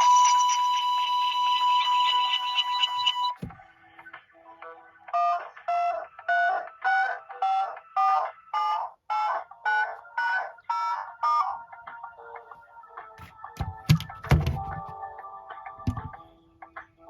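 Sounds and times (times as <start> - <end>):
phone alarm beeps: 0.0 - 3.4
soft thump: 3.4 - 3.6, 13.6 - 14.9, 15.9 - 16.2.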